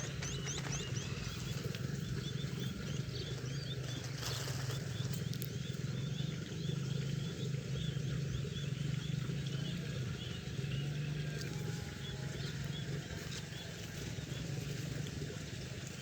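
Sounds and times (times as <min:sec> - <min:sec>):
low pulsing drone: 0:00.0 - 0:16.0.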